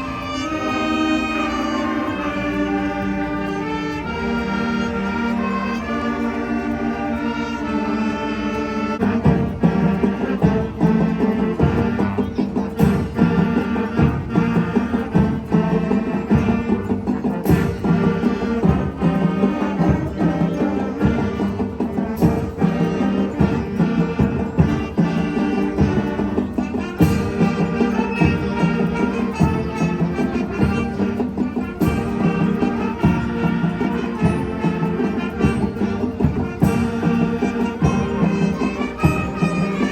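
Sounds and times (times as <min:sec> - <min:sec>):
wind band playing: 0:00.0 - 0:39.9
drums beating: 0:09.0 - 0:39.9.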